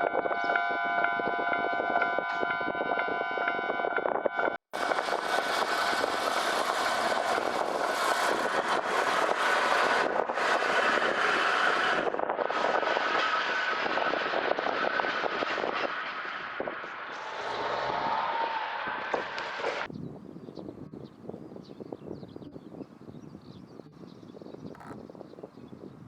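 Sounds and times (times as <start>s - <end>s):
diesel railcar passing: 4.8s - 19.9s.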